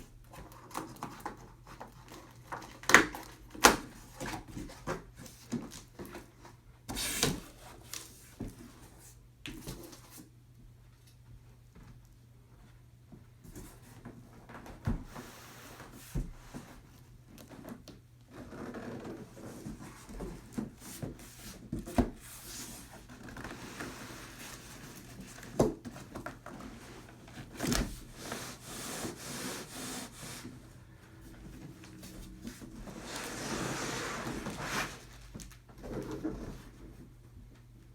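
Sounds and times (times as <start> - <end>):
cardboard rubbing and scraping: 18.3 - 30.7, 31.4 - 36.9.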